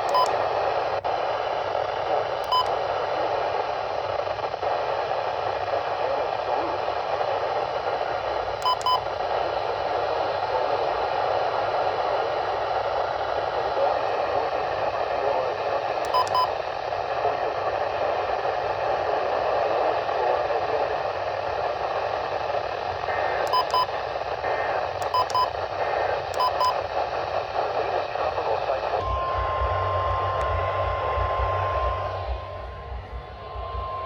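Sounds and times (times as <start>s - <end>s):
radio static hiss: 0.0s - 34.0s
low buzz: 29.0s - 34.0s.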